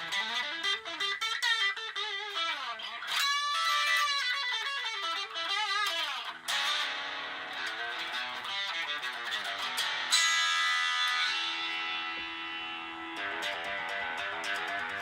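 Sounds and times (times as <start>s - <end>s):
distorted electric guitar lead: 0.0s - 15.0s.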